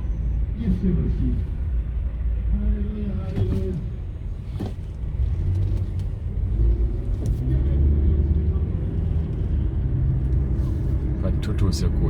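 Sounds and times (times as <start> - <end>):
car engine rumble: 0.0 - 12.0
tyres on road: 0.0 - 12.0.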